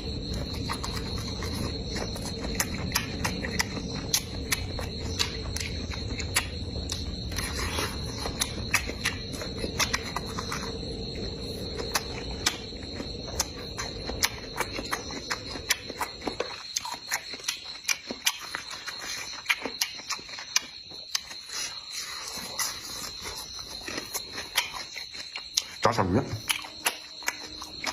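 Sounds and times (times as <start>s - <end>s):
low background rumble: 0.0s - 16.6s
chewing crunchy food: 0.0s - 27.9s
crickets trilling: 0.0s - 27.9s.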